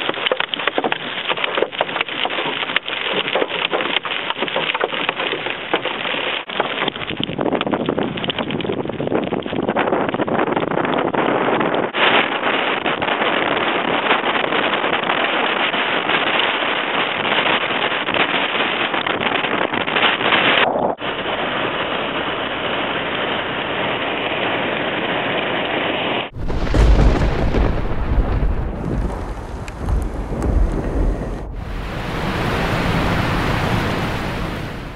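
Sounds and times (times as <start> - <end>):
wind buffeting microphone: 6.8 - 16.3, 26.3 - 34.9
heavy rain and wind hiss: 21.0 - 34.9.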